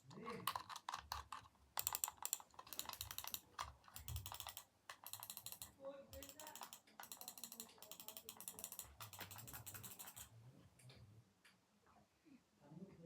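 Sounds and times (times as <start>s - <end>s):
keyboard typing clicks: 0.0s - 10.3s.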